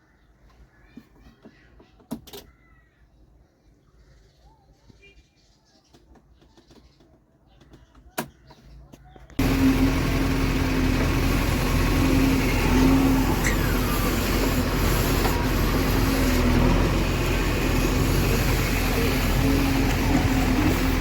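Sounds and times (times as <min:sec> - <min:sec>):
diesel engine running: 0:09.4 - 0:21.0.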